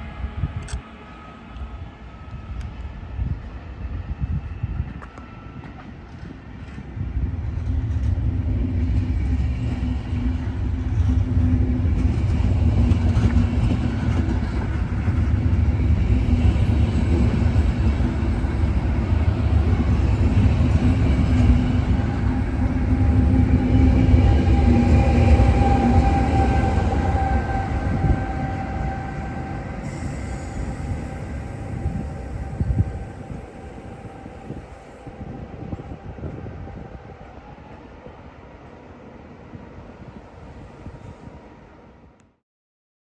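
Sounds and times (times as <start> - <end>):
train low rumble: 0.0 - 42.4
locomotive whining tones: 9.1 - 37.8.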